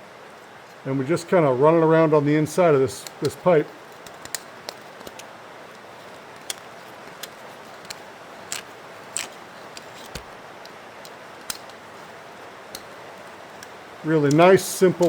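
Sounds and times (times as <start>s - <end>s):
faint steady hiss: 0.0s - 15.0s
reaming tool clicks on pipe: 6.4s - 11.8s, 12.7s - 12.9s.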